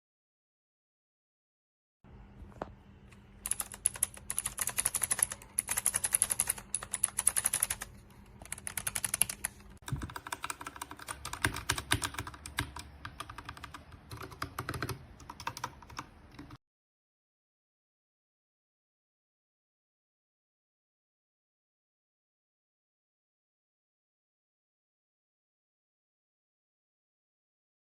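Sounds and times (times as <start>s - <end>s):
typing on mechanical keyboard: 3.4s - 16.6s.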